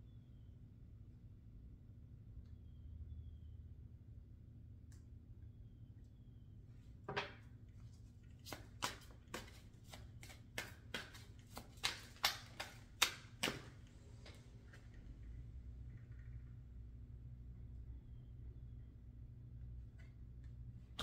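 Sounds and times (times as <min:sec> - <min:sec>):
faint low hum: 0:00.0 - 0:21.0
cards shuffled by hand: 0:07.8 - 0:13.9
card slaps and snaps: 0:08.4 - 0:13.8.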